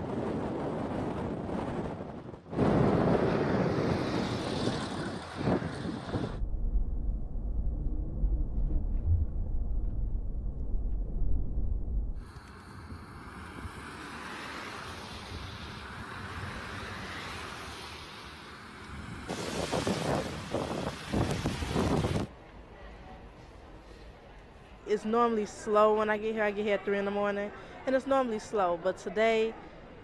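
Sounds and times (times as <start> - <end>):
traffic noise: 0.0 - 6.4, 12.2 - 30.0
wind buffeting microphone: 0.0 - 17.2, 18.9 - 22.3.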